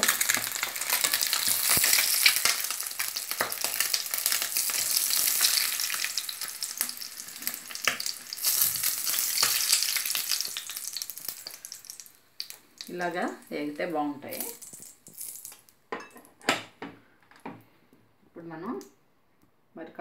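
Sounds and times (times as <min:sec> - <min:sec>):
oil sizzling in a frying pan: 0:00.0 - 0:13.5.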